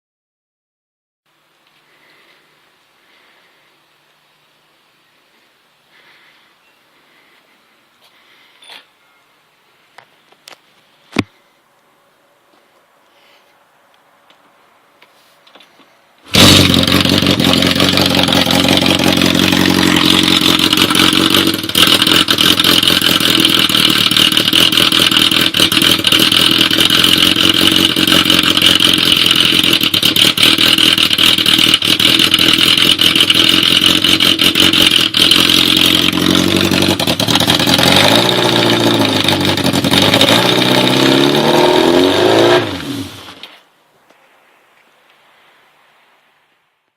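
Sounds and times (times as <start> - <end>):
motorcycle engine running: 16.3 - 43.3.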